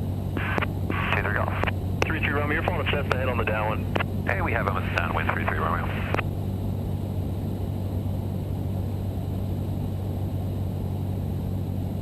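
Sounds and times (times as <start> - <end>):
airplane engine droning in cabin: 0.0 - 12.0.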